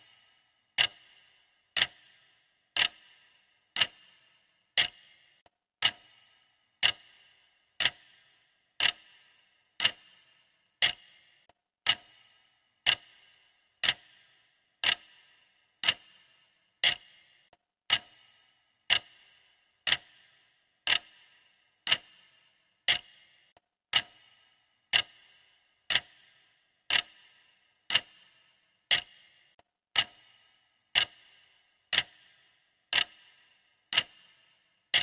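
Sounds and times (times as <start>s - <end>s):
clock ticking: 0.0s - 35.0s.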